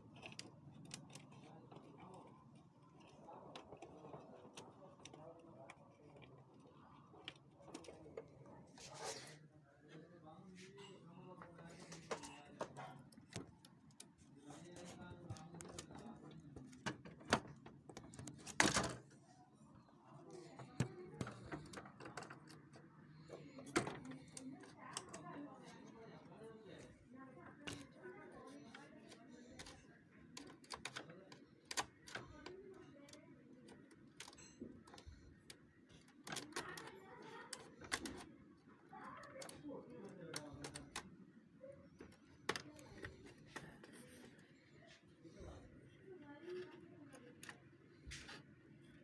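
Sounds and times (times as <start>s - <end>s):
plastic parts clicking: 0.0s - 8.4s, 20.5s - 25.9s, 27.4s - 38.3s, 39.1s - 41.1s, 42.0s - 44.2s.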